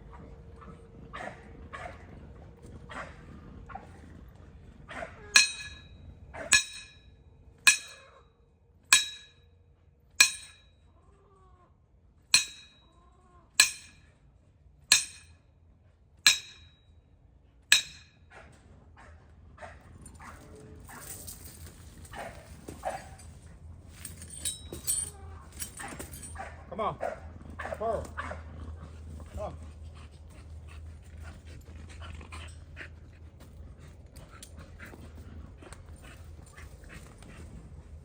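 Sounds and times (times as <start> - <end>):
ringing metal clangs: 5.4 - 8.2, 8.9 - 9.5, 10.2 - 10.9, 12.4 - 14.1, 14.9 - 15.4, 16.3 - 17.0, 17.7 - 18.2, 23.9 - 26.4.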